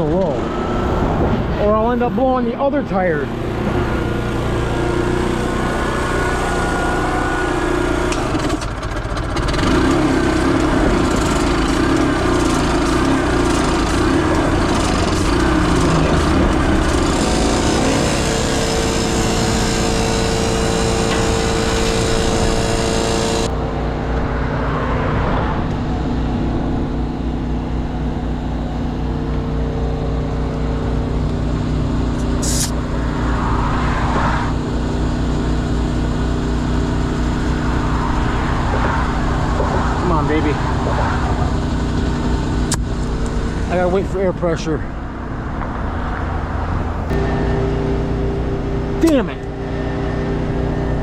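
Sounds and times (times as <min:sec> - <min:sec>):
engine running steadily: 0:00.0 - 0:51.0
loud hiss: 0:17.0 - 0:23.5, 0:32.2 - 0:32.8
brief high squeak: 0:32.2 - 0:32.8.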